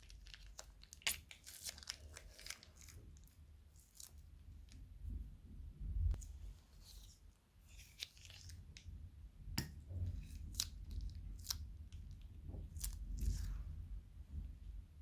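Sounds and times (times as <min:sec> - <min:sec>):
slime crinkling: 0:00.0 - 0:04.8, 0:07.7 - 0:08.8.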